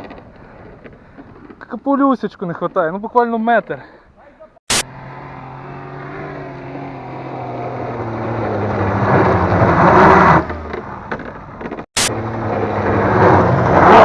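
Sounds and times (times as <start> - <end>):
car engine revving under load: 4.7 - 14.0
tyres spinning in dirt: 7.0 - 14.0.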